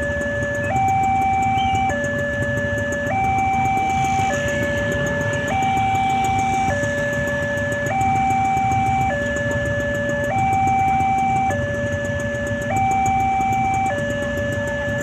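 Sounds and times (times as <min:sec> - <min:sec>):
two-tone crossing alarm: 0:00.0 - 0:15.0.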